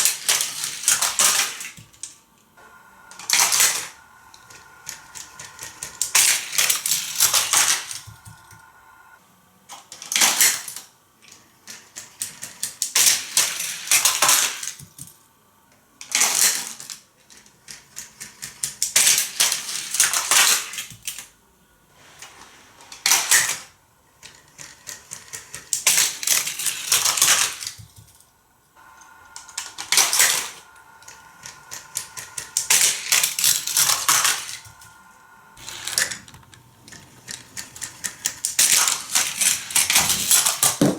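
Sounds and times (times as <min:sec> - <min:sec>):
toy cars clattering over plastic track: 0:16.0 - 0:21.3, 0:22.2 - 0:28.2, 0:35.6 - 0:40.9.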